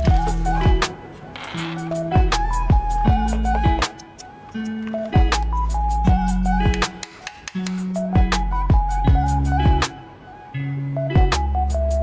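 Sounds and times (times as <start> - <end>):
plucked melody with bass and kick drum: 0.0 - 0.9, 1.9 - 3.9, 4.6 - 10.0, 11.1 - 12.0.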